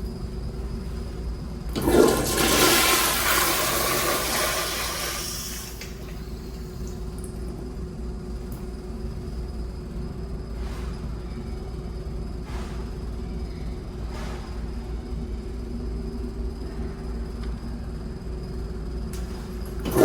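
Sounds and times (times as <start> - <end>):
steady background hum: 0.0 - 20.0
toilet flushing: 1.6 - 7.0, 19.2 - 20.0.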